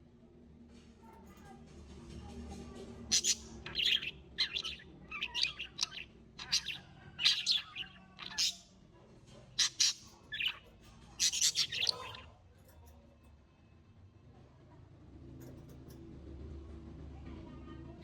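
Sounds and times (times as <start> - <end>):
birds chirping: 3.1 - 8.8, 9.5 - 12.4.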